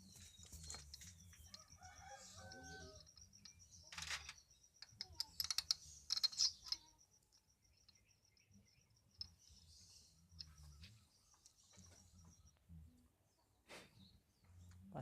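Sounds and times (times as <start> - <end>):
metal engine parts clinking: 0.0 - 12.0.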